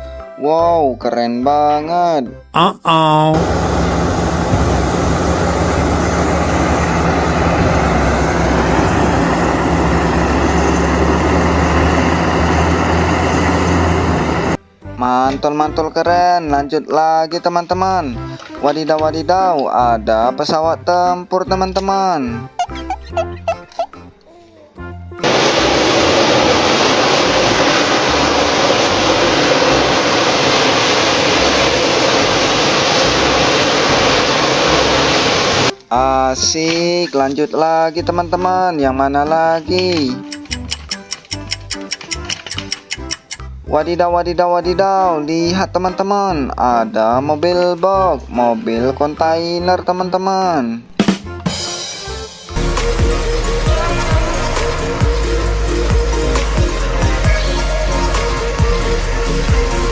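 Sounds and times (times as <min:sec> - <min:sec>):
heavy machine engine humming: 0:03.4 - 0:14.6, 0:25.2 - 0:35.7, 0:52.6 - 0:59.9.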